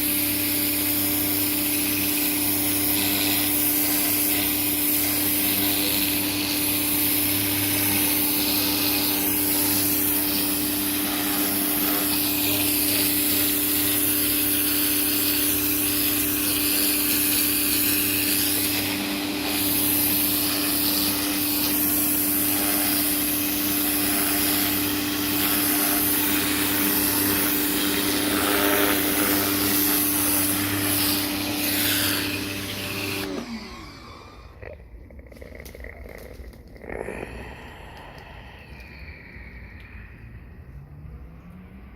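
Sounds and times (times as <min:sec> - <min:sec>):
hissing water spray: 0:00.0 - 0:33.3
pressure washer motor hum: 0:00.0 - 0:34.8.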